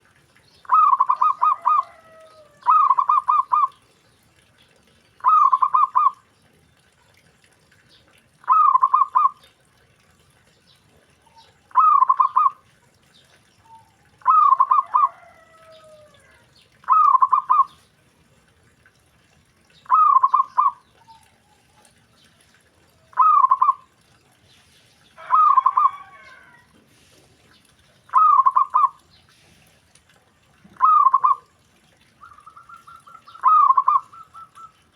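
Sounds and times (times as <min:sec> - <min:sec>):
dove cooing: 0:00.6 - 0:03.8, 0:05.2 - 0:06.2, 0:08.4 - 0:09.4, 0:11.4 - 0:12.6, 0:13.6 - 0:17.8, 0:19.9 - 0:21.9, 0:23.1 - 0:23.9, 0:25.2 - 0:27.1, 0:28.1 - 0:29.0, 0:30.7 - 0:31.5, 0:32.2 - 0:34.9.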